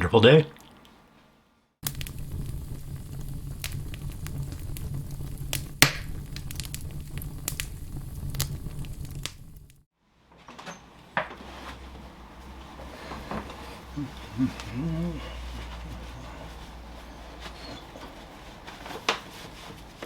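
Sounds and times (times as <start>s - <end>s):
fire crackling and popping: 1.8s - 9.9s, 12.4s - 17.1s
fire roaring: 1.8s - 9.9s, 11.9s - 18.0s.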